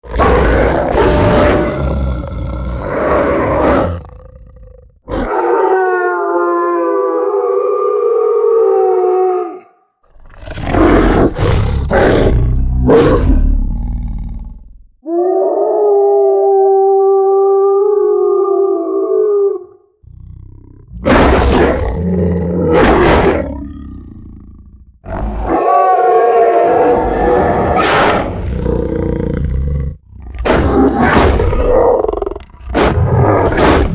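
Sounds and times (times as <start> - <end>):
creature roar with deep rumble: 0.0 - 33.9
pitched creature howl: 0.1 - 4.0, 5.1 - 9.8, 15.0 - 19.8, 25.1 - 29.4.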